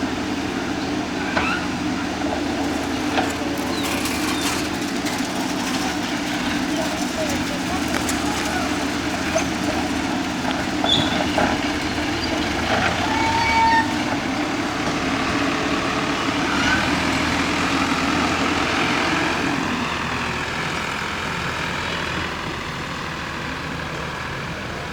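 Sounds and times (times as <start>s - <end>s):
diesel engine running: 0.0s - 24.9s
short high squeaks: 2.6s - 14.2s.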